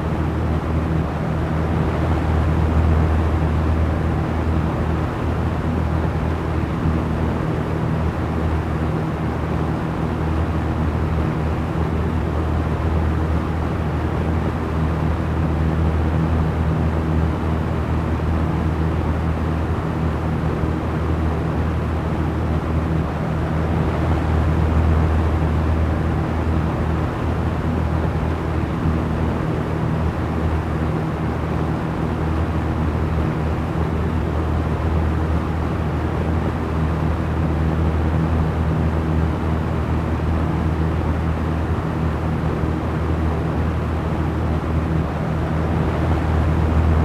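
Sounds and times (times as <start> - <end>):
electric fan air rush: 0.0 - 47.0
low motor hum: 43.8 - 47.0.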